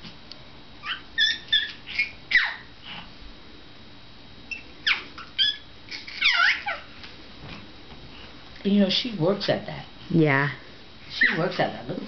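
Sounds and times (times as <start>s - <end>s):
baby squealing: 0.8s - 2.7s, 4.5s - 6.9s, 11.2s - 11.5s.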